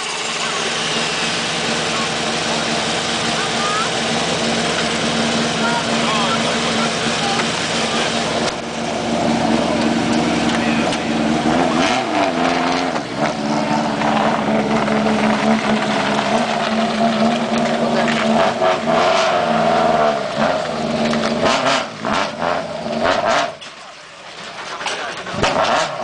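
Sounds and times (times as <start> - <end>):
rally car engine idling: 0.0 - 26.0.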